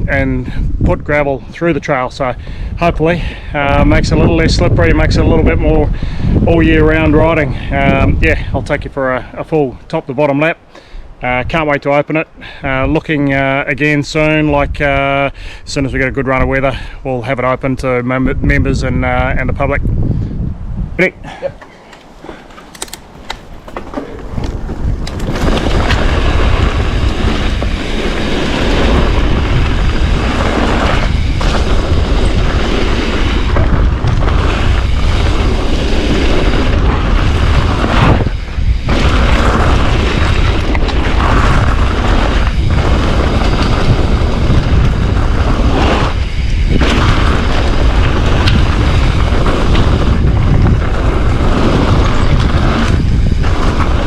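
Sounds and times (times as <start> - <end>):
wind buffeting microphone: 0.0 - 54.0
bike tyres rolling over gravel: 21.7 - 54.0.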